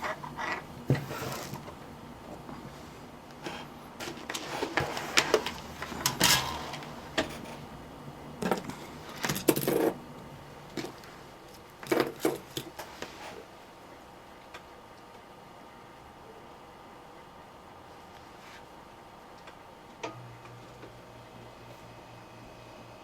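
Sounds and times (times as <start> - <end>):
small tools clicking and clattering: 3.4 - 7.8, 8.4 - 11.1.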